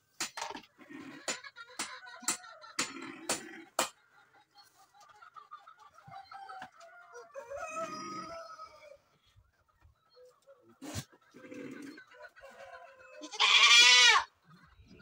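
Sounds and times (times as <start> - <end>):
chickens clucking: 0.0 - 15.0
rooster crowing: 7.1 - 9.0.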